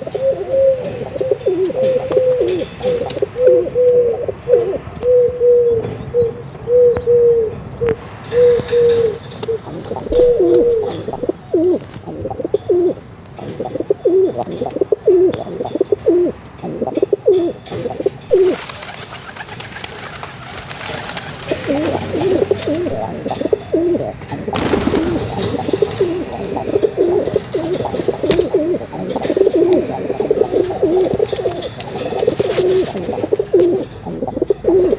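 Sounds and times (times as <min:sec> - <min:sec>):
steady hiss: 0:00.0 - 0:11.3, 0:24.6 - 0:25.8
pigeons cooing: 0:00.0 - 0:11.7, 0:24.6 - 0:25.6.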